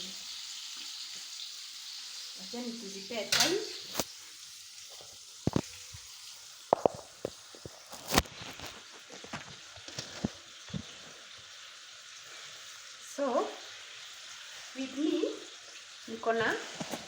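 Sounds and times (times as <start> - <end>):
chicken sizzling in a pan: 0.0 - 17.0
sharp oil pops: 6.7 - 8.2.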